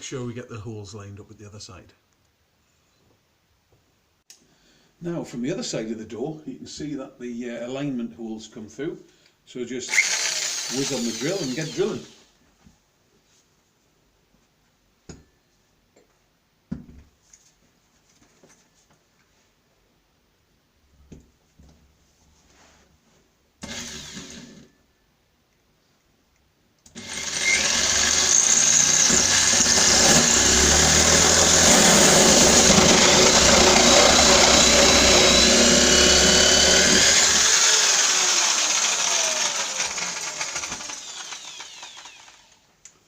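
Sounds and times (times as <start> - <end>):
power drill with hole saw cutting wood: 9.9 - 12.3, 23.6 - 24.7, 27.0 - 42.7.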